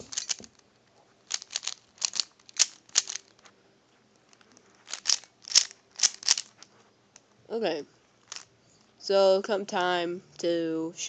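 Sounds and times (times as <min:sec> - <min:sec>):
puzzle cube clacking: 0:00.0 - 0:00.6, 0:01.2 - 0:03.5, 0:04.2 - 0:06.7, 0:08.2 - 0:08.5.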